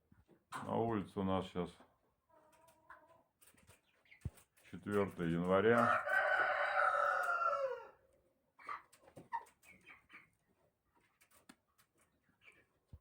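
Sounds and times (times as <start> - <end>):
faint chicken calls: 5.8 - 11.1.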